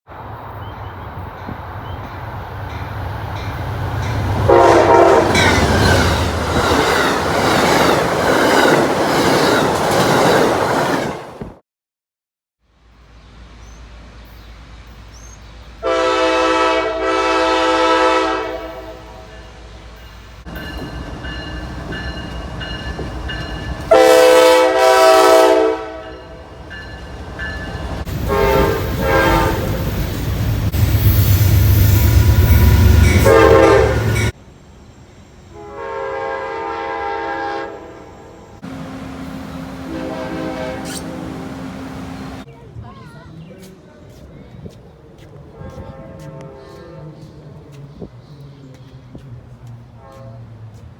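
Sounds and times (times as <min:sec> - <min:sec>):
passing train rumble and clatter: 0:00.1 - 0:11.6, 0:12.8 - 0:50.9
train horn blasts: 0:04.4 - 0:06.1, 0:15.8 - 0:19.8, 0:20.8 - 0:26.5, 0:28.1 - 0:29.9, 0:32.2 - 0:34.4, 0:35.6 - 0:42.4, 0:45.5 - 0:47.2, 0:50.0 - 0:50.7.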